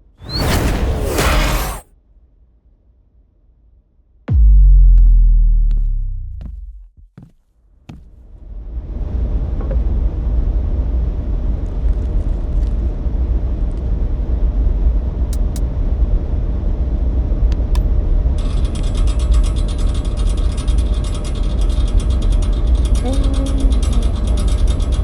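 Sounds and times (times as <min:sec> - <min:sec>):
machine rumbling: 0:04.3 - 0:07.1, 0:08.2 - 0:25.0
sharp clicks: 0:15.4 - 0:15.6
fast mechanical rattle: 0:18.4 - 0:25.0.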